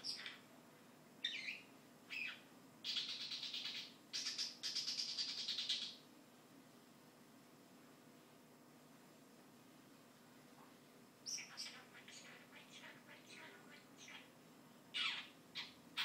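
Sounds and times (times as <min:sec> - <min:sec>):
bird chirps: 0:00.0 - 0:00.4, 0:01.2 - 0:06.0, 0:11.2 - 0:14.3, 0:14.9 - 0:16.0
bird chattering warble: 0:01.2 - 0:06.0, 0:11.2 - 0:14.3, 0:14.9 - 0:16.0.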